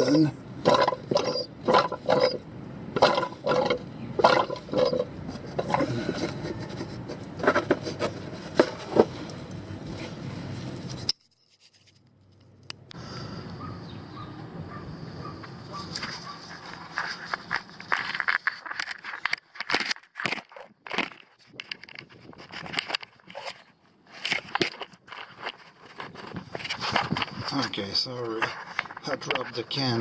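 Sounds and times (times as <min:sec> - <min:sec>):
hands handling plastic bottle: 0:15.9 - 0:27.6.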